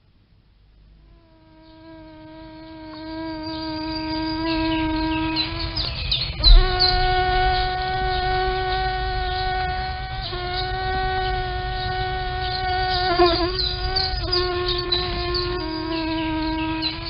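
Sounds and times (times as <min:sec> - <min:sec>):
mosquito wing whine: 0:01.0 - 0:17.0
short knock: 0:06.4 - 0:07.2.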